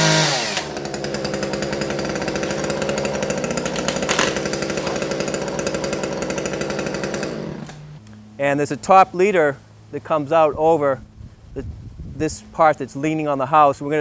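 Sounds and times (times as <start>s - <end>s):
chainsaw running: 0.0s - 8.4s.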